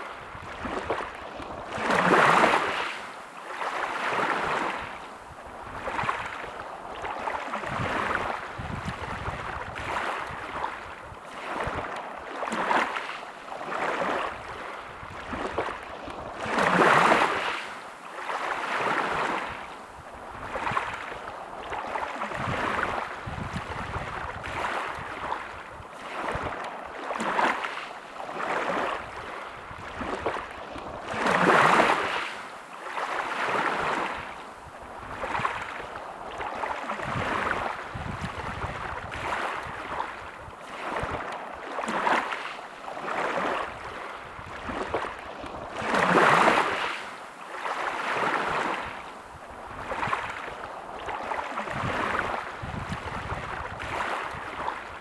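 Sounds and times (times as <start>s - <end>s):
sea waves washing onto shore: 0.0s - 55.0s.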